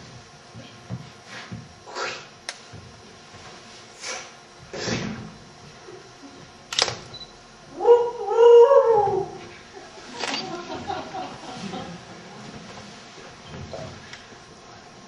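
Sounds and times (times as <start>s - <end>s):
person imitating cat meow: 7.7s - 9.5s.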